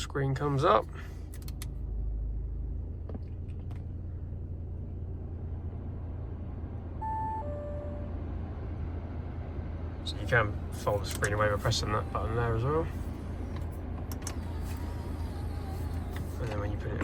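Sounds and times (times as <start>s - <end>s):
diesel engine idling: 0.0s - 17.0s
two-note electronic chime: 7.0s - 8.2s.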